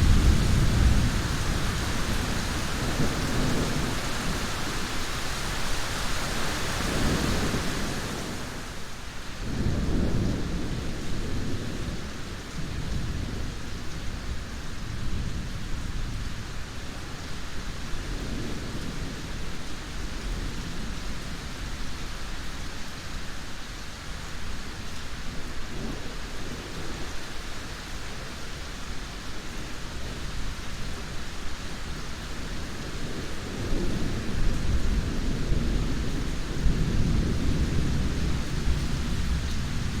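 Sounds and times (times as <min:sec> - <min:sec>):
rolling thunder: 0:00.0 - 0:04.9
steady rain hiss: 0:00.0 - 0:40.0.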